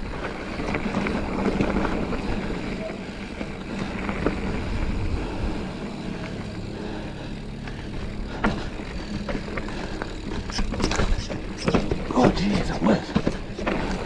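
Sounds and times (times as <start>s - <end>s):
bike tyre rumble on dirt trail: 0.0s - 14.0s
sharp knocks and rattles: 8.2s - 14.0s.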